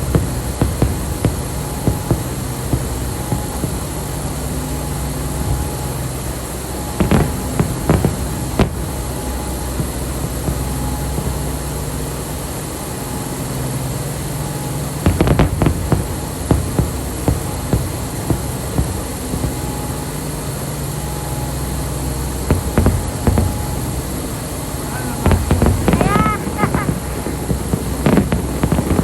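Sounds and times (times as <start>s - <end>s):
fireworks pops: 0.0s - 4.3s, 7.0s - 11.7s, 15.0s - 20.3s, 22.4s - 24.1s, 24.8s - 29.0s
fireworks bangs: 0.0s - 29.0s
steady low rumble: 0.0s - 29.0s.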